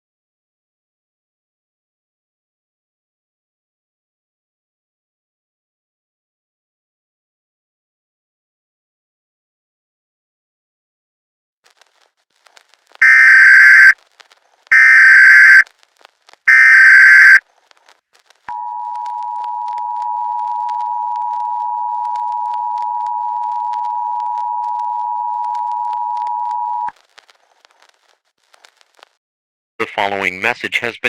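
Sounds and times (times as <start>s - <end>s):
data tone bursts: 13.0s - 14.0s, 14.7s - 15.6s, 16.5s - 17.4s
two-tone attention signal: 13.0s - 14.0s, 14.7s - 15.6s, 16.5s - 17.4s.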